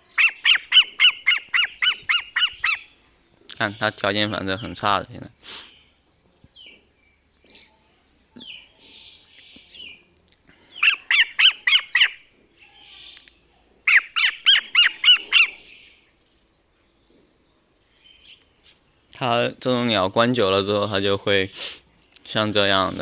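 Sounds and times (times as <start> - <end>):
faint bird chirps: 0.0 - 20.0
cockatiel squawking calls: 0.1 - 2.9, 10.8 - 12.2, 13.9 - 15.7.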